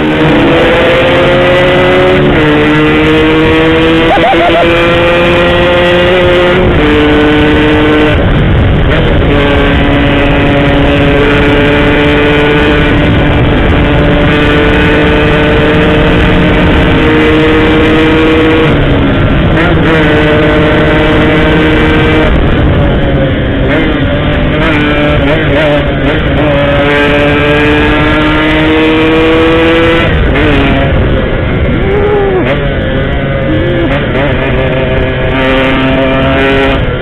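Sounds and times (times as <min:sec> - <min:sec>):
two-stroke motorcycle engine running: 0:00.0 - 0:37.0.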